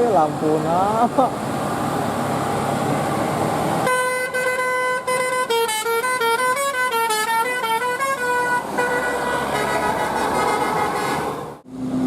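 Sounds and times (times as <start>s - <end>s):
multi-tone bus horn playing a tune: 3.9s - 11.4s.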